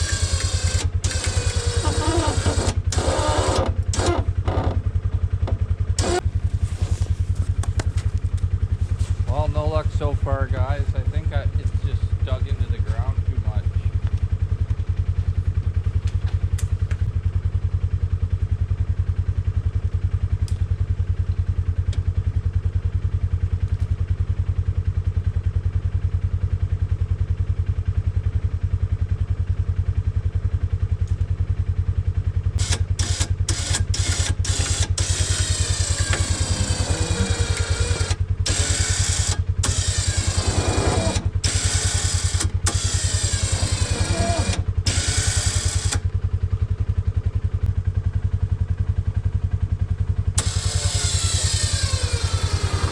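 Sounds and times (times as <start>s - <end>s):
winch whining under load: 0.0s - 7.8s, 32.6s - 46.2s, 50.4s - 52.9s
atv engine running: 0.0s - 52.9s.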